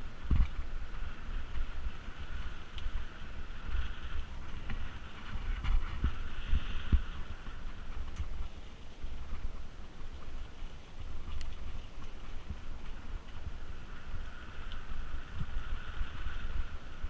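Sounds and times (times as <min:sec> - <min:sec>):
bike tyres rumbling on rough track: 0:00.0 - 0:17.0
wind buffeting microphone: 0:00.0 - 0:17.0.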